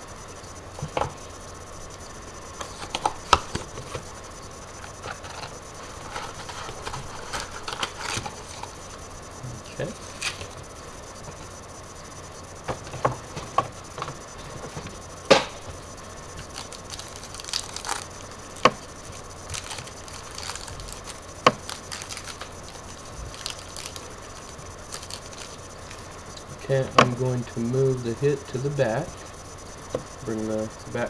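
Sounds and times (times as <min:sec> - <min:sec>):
cards clicking and tapping: 0:02.6 - 0:04.0.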